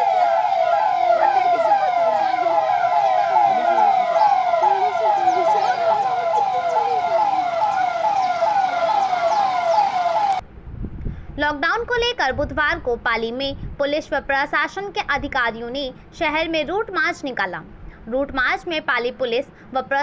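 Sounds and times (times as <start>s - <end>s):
police siren wailing: 0.0s - 10.4s.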